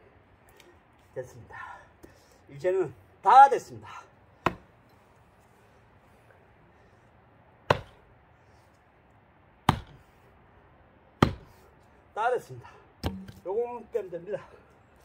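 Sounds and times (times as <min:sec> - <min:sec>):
axe knocking against log: 0:04.4 - 0:04.7, 0:07.7 - 0:08.0, 0:09.7 - 0:10.0, 0:11.2 - 0:11.5, 0:13.0 - 0:13.4.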